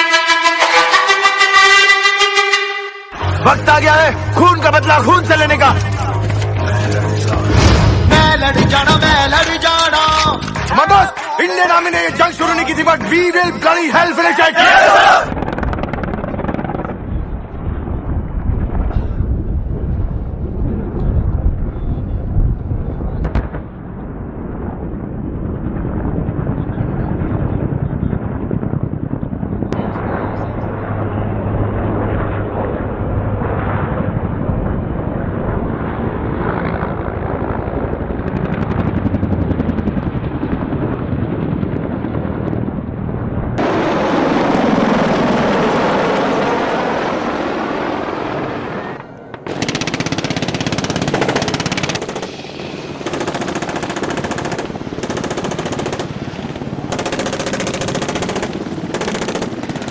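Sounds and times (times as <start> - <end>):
rapid automatic gunfire: 49.5 - 59.9.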